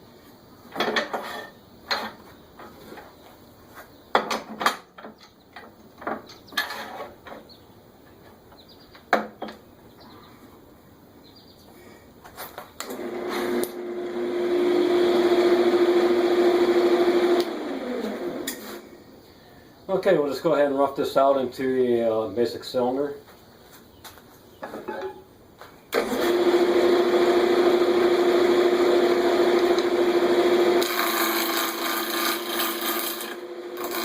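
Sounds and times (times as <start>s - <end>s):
knocks and clicks of metal and wood: 4.1s - 7.5s, 8.9s - 9.6s
wood lathe motor humming: 12.8s - 18.6s, 26.0s - 34.0s.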